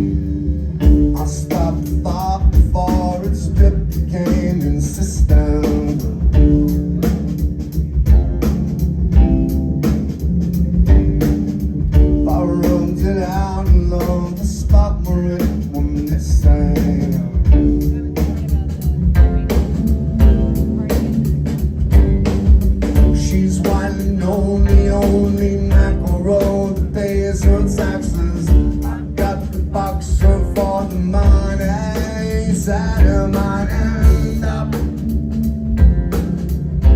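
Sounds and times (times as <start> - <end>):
drum kit beat: 0.0 - 36.9
live band playing: 0.0 - 36.9.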